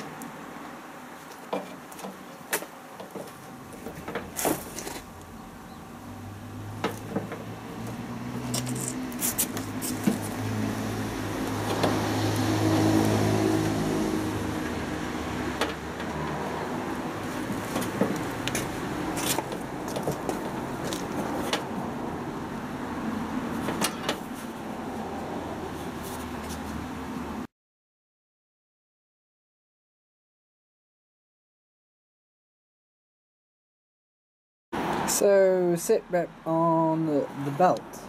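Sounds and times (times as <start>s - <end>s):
clicks and knocks of drive belt: 17.4s - 21.7s.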